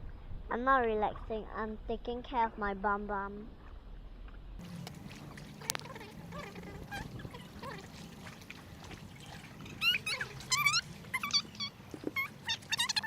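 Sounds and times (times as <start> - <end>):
faint water sounds: 0.8 - 13.0
birds squawking chirps: 9.2 - 13.0.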